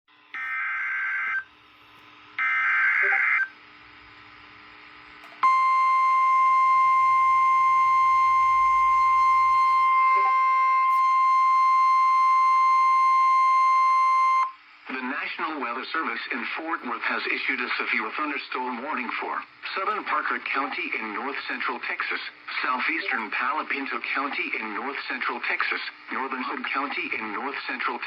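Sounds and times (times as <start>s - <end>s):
warning alarm tone: 2.4s - 3.5s, 5.3s - 14.5s.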